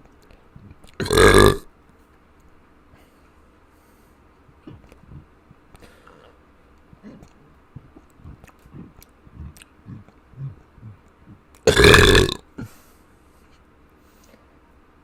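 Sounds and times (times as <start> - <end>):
person burping: 0.6 - 1.7, 4.6 - 5.3, 7.0 - 12.8.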